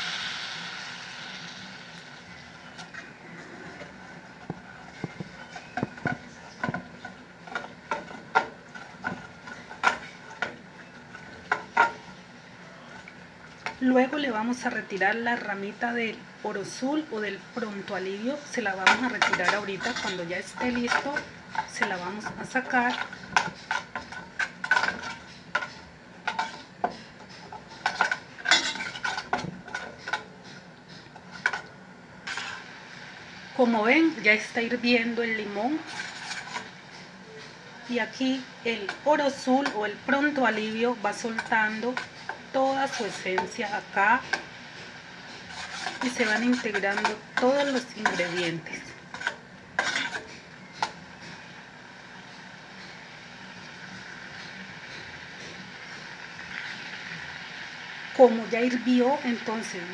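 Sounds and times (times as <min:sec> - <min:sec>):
faint steady hiss: 0:00.0 - 0:06.8
utensils clicking on a pot: 0:03.8 - 0:12.0, 0:18.6 - 0:32.6, 0:35.8 - 0:37.5, 0:38.7 - 0:51.0
utensil clinking on a pot: 0:45.3 - 0:51.0.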